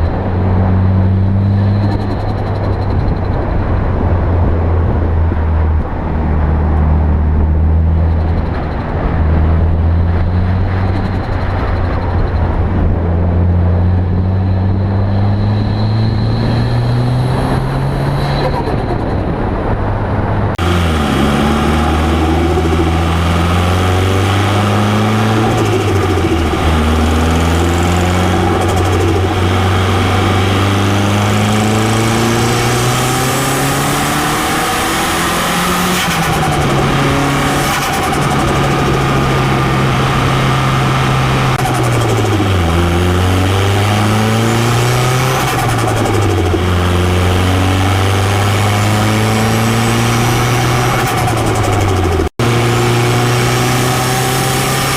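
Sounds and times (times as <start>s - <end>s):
car engine revving high: 12.8s - 19.5s, 20.5s - 54.9s.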